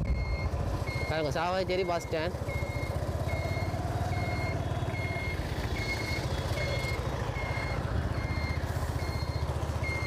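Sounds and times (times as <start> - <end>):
high electronic beep: 0.0 - 10.0
motorbike engine running: 0.1 - 10.0.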